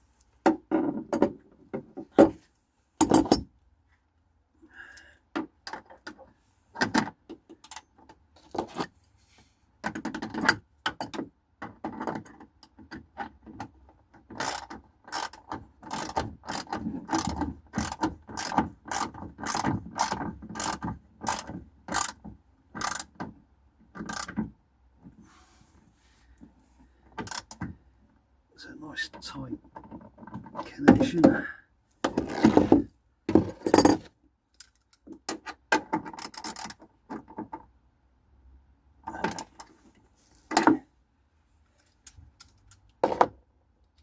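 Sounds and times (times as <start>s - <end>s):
ratchet spanner clicking: 14.4s - 22.2s, 22.8s - 23.1s, 24.0s - 24.4s.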